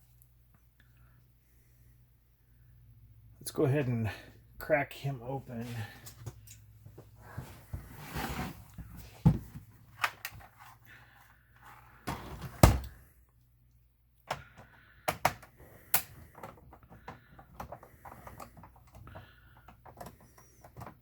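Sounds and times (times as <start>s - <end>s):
plastic case clicks and knocks: 14.3s - 21.0s.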